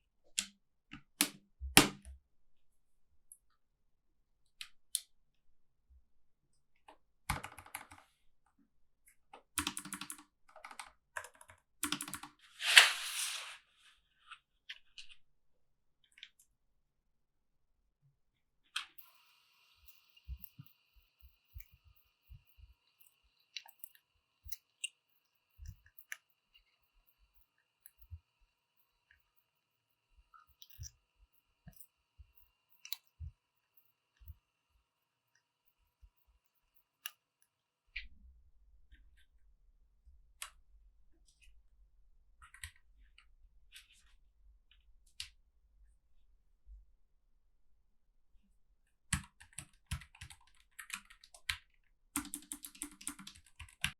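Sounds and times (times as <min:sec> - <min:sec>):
keyboard plastic clicks: 0:09.6 - 0:12.3, 0:52.2 - 0:53.9.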